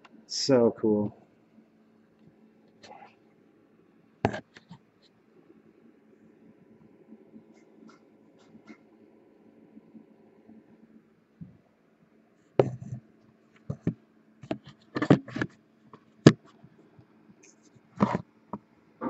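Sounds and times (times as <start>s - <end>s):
faint steady hum: 0.0s - 19.0s
knocks and rustles of handling: 12.6s - 16.6s, 17.8s - 18.7s.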